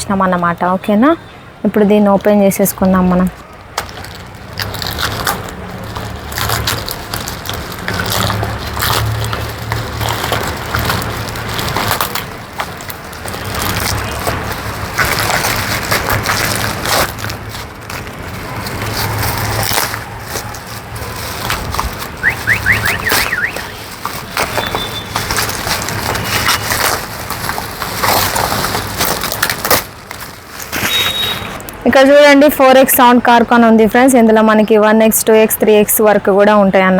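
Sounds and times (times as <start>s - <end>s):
packaging rustling and tearing: 3.3s - 31.8s.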